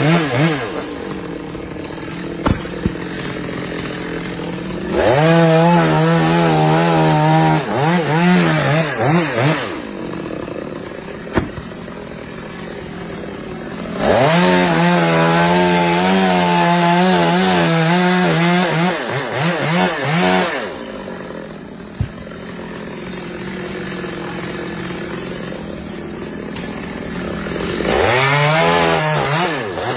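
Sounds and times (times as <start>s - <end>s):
chainsaw cutting wood: 0.0s - 29.9s
chainsaw idling: 0.0s - 29.9s.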